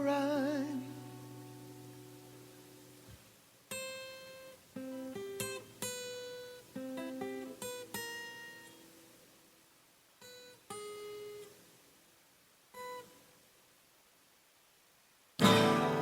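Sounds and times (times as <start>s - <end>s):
solo guitar picking melody: 3.7s - 9.1s, 15.4s - 16.0s.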